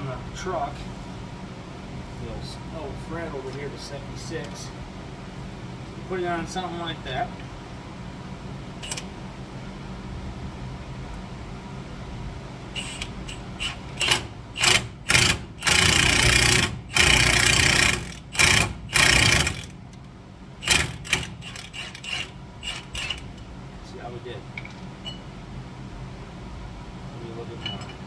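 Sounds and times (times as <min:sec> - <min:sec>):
impact wrench bursts: 0:12.8 - 0:19.8, 0:20.6 - 0:23.4.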